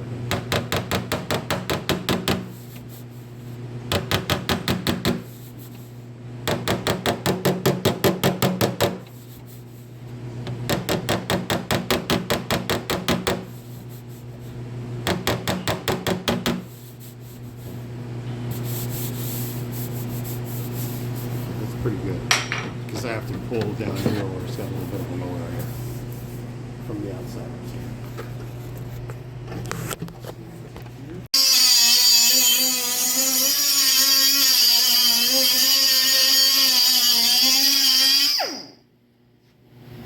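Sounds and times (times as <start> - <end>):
steady low hum: 4.7 - 31.3.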